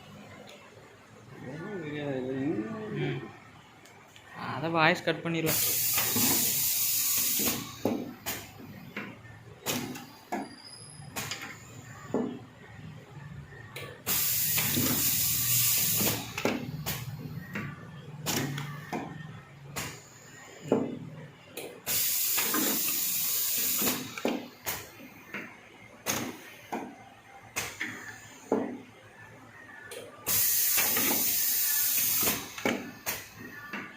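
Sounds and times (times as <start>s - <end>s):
machine air hiss bursts: 5.5s - 8.5s, 14.0s - 17.2s, 21.8s - 24.9s, 30.3s - 33.3s.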